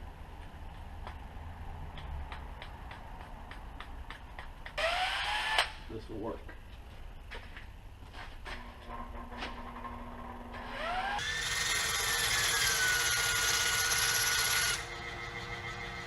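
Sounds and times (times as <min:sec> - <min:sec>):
power grinder whining: 0:10.2 - 0:16.0.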